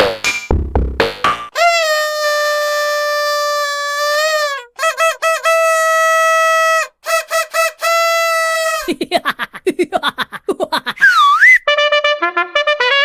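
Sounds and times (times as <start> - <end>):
buzzy cartoon horn honks: 1.5 - 5.9.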